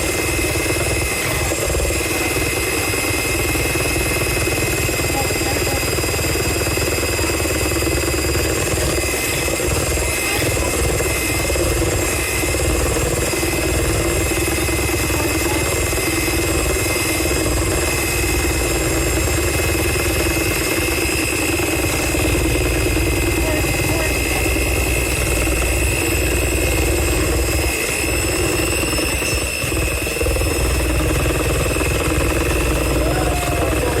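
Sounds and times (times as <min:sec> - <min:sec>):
electric mixer motor whining: 0:00.0 - 0:34.0.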